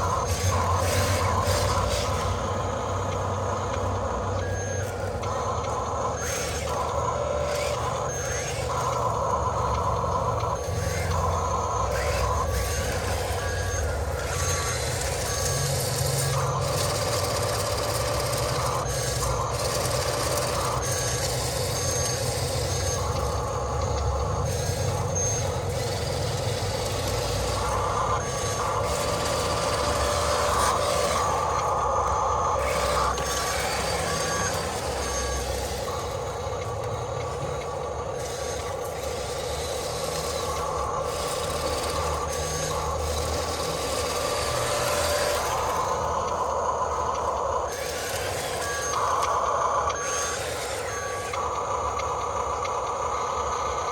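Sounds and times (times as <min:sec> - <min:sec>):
electric toy motors whirring: 0:00.0 - 0:53.9.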